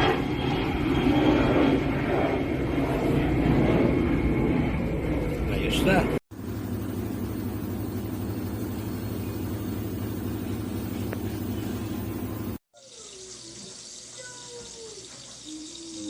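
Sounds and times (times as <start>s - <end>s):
low hum: 0.0s - 12.6s.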